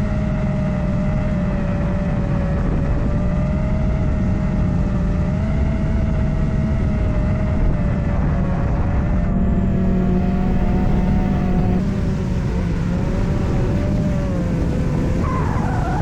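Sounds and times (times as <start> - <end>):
wind buffeting microphone: 6.1 - 16.0
drone propellers whining: 9.3 - 16.0.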